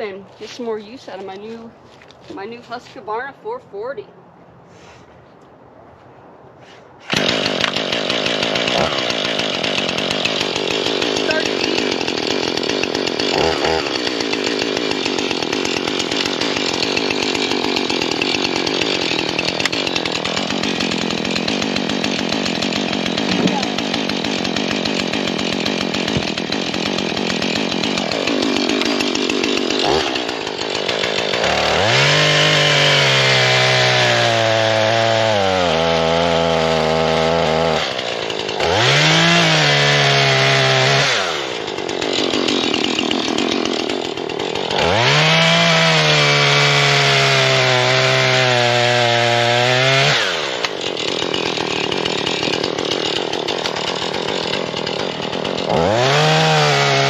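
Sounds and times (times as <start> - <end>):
chainsaw cutting logs: 0.0 - 4.0, 6.6 - 57.0.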